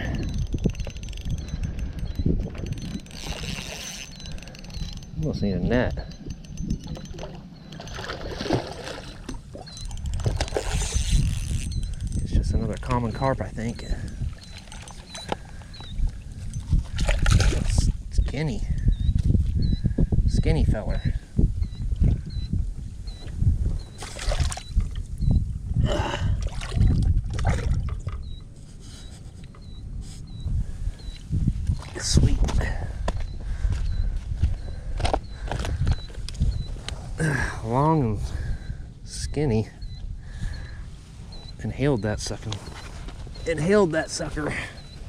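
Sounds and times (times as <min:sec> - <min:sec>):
wind rumble on microphone: 0:00.0 - 0:45.0
fish splashing in shallow water: 0:07.1 - 0:11.0, 0:24.0 - 0:25.0, 0:26.4 - 0:28.2.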